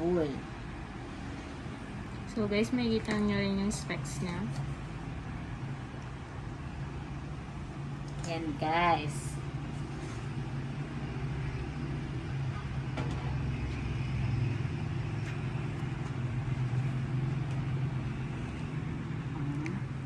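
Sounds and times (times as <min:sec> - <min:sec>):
low background rumble and hum: 0:00.0 - 0:20.0.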